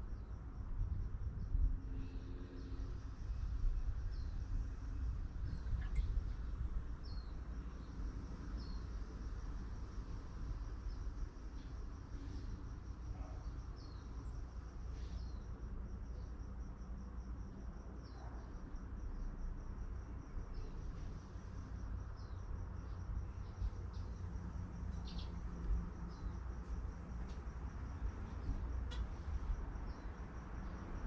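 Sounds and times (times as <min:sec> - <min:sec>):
low steady rumble: 0:00.0 - 0:14.7
high insect trill: 0:00.0 - 0:31.0.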